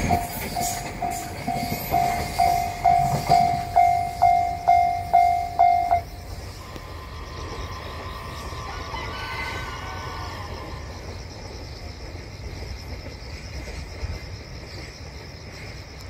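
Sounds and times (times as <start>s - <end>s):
level-crossing warning bell dinging: 0.0s - 11.4s.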